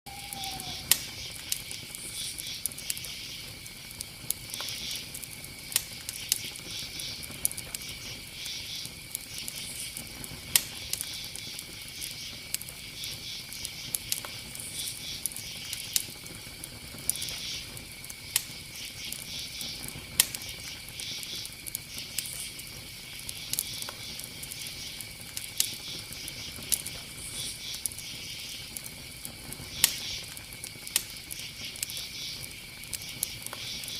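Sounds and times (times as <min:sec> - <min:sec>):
faint steady high tone: 0:00.1 - 0:00.9
bonfire crackling and popping: 0:00.1 - 0:33.9.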